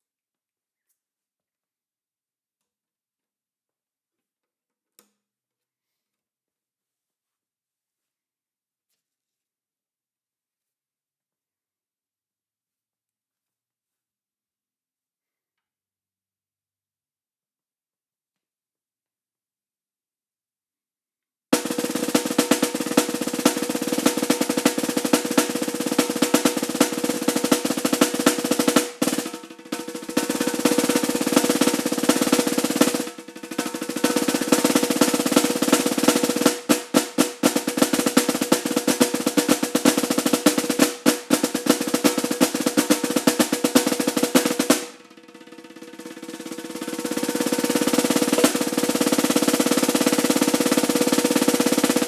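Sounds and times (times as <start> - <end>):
snare drum rolls: 21.5 - 52.0.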